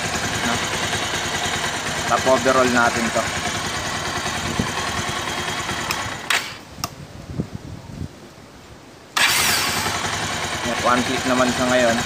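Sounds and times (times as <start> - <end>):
motorcycle engine idling: 0.0 - 6.6, 9.2 - 12.0
motorcycle engine starting: 0.0 - 6.7, 9.2 - 12.0.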